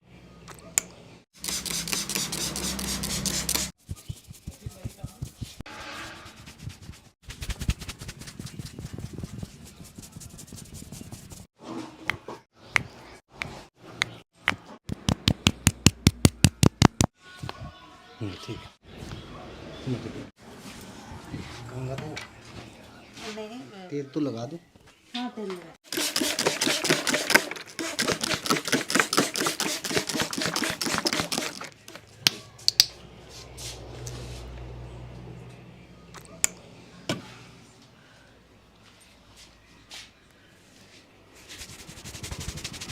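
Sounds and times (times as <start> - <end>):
hands rubbing hair and scalp: 1.6 - 5.6, 6.4 - 11.5, 25.9 - 31.8, 41.4 - 42.9
hands slapping on a head: 7.3 - 8.6, 12.8 - 17.1.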